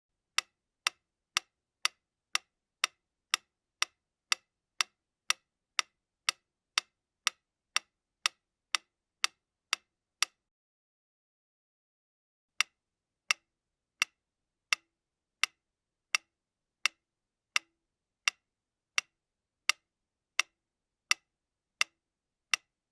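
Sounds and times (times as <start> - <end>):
mechanical metronome ticking: 20.4 - 22.8.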